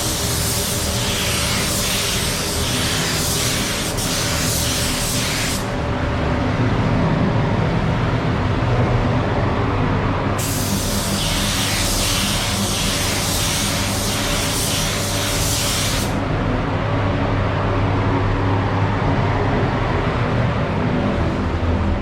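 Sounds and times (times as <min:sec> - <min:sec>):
paint spray gun hissing: 0:00.0 - 0:05.6, 0:10.4 - 0:16.2
extraction fans droning: 0:00.0 - 0:22.0.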